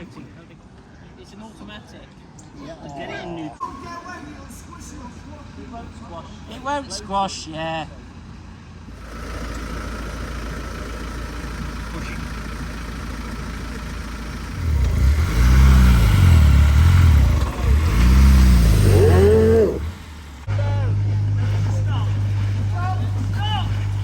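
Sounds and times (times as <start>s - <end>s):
vehicle engine revving: 8.8s - 24.0s.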